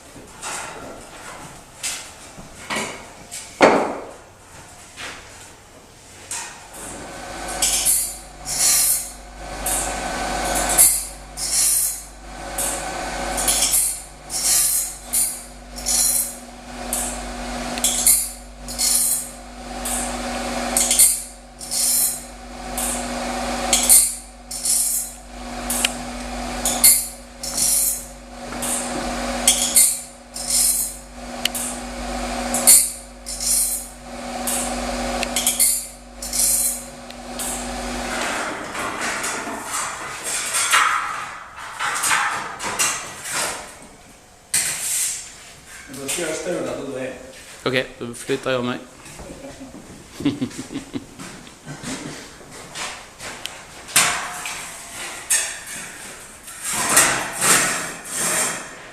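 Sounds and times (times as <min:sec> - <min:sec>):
sawmill machinery humming: 0:06.7 - 0:40.2.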